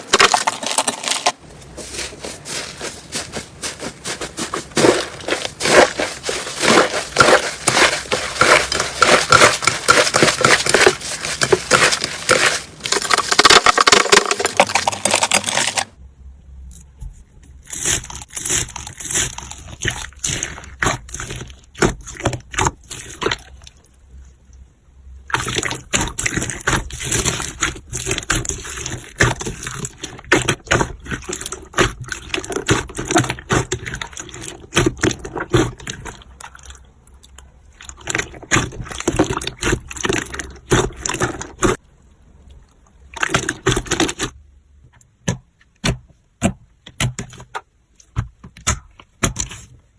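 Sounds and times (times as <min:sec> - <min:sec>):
slime squelching and popping: 0:04.7 - 0:15.9, 0:17.7 - 0:23.9, 0:25.3 - 0:41.8, 0:42.5 - 0:44.4.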